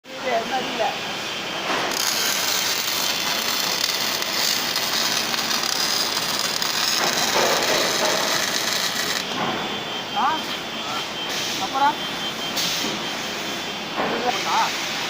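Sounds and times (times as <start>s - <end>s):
welding arc hissing: 1.9s - 9.3s.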